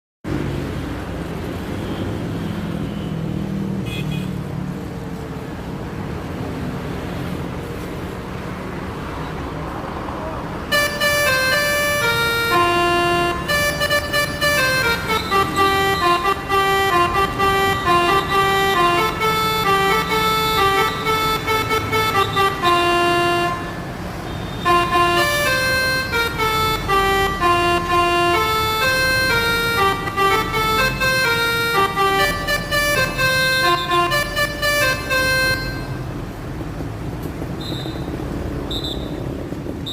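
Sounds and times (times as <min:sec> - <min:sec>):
bus air horn melody: 0:10.7 - 0:36.3.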